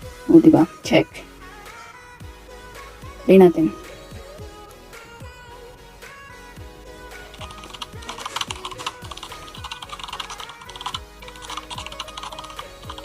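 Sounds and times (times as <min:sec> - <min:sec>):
background music with steady beat: 0:00.0 - 0:13.0
computer keyboard clicks: 0:07.4 - 0:13.0.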